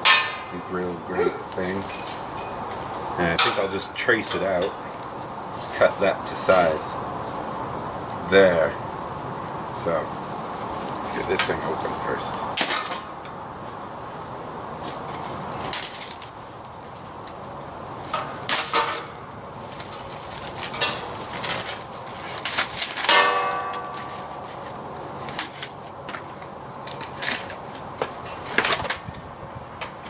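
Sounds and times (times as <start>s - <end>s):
hand tools scraping metal keg: 0.0s - 4.8s.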